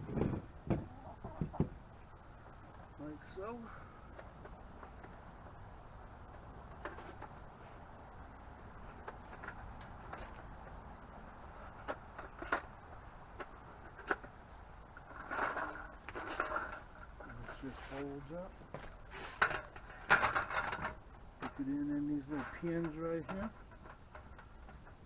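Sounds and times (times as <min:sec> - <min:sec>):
insects droning: 0:00.0 - 0:25.0.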